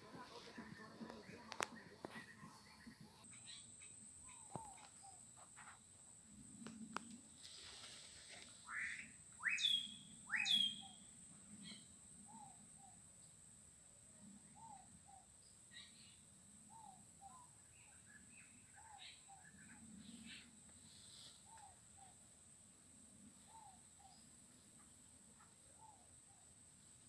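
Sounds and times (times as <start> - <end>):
birds twittering: 0.1 - 5.2
rising whistled bird notes: 8.7 - 11.0.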